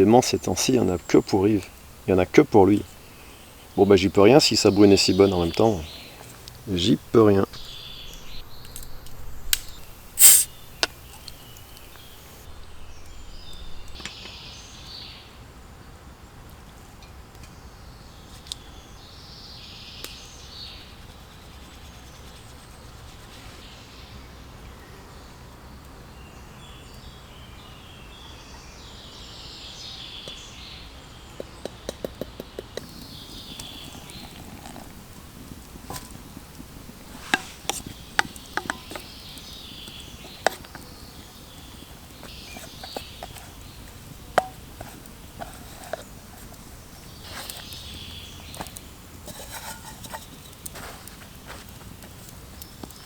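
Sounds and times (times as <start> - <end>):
birds chirping and singing: 0.0 - 15.1, 32.8 - 48.8
outdoor background noise: 0.0 - 53.0
gas hissing from bottle: 7.6 - 12.5, 32.8 - 52.0
beer bottle cap click: 9.5 - 12.1
short sharp clicks: 9.6 - 10.6.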